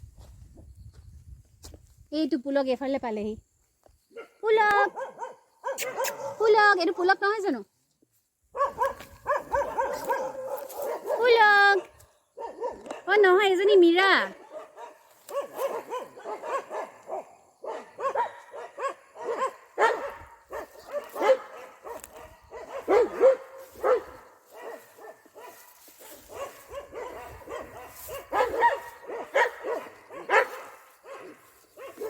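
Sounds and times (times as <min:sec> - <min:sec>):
dog barking: 0:04.1 - 0:06.5, 0:08.5 - 0:13.2, 0:14.2 - 0:32.0.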